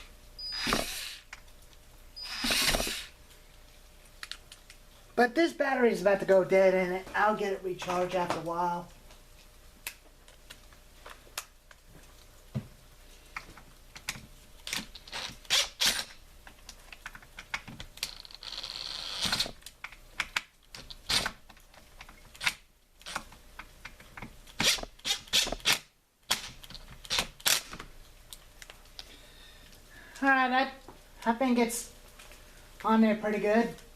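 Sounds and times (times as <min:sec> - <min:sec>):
scraping hiss: 0:00.0 - 0:01.4, 0:02.2 - 0:03.2.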